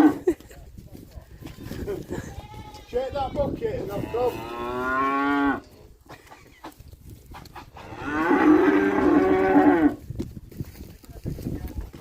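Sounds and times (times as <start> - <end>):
calf mooing: 7.8 - 10.0.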